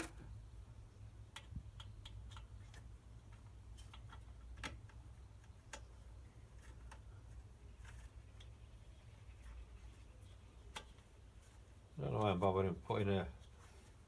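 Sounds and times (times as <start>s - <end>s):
small parts clicking and tapping: 1.2s - 8.7s.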